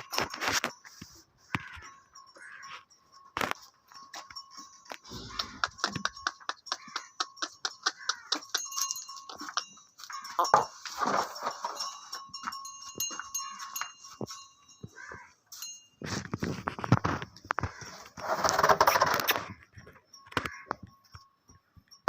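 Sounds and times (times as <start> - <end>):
sharp clicks and knocks: 3.4 - 9.8
cow calling: 5.0 - 10.7.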